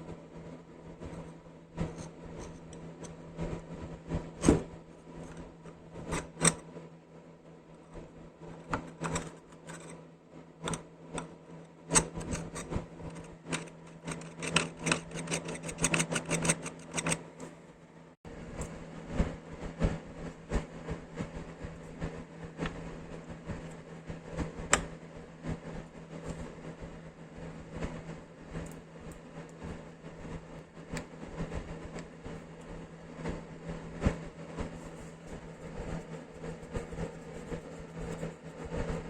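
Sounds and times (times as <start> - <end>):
steady low hum: 0.0 - 39.0
clicks and taps of tool parts: 11.9 - 17.2.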